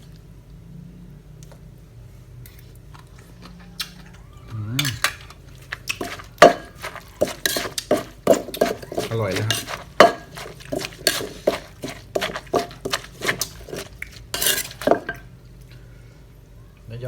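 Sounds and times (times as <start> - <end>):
spoon and dishes clinking: 4.8 - 15.3.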